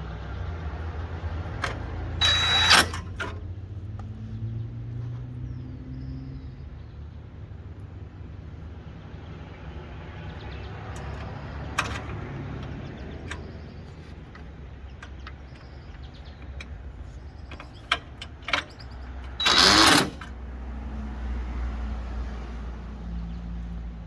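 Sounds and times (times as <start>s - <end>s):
sharp clicks and knocks: 10.8s - 20.4s.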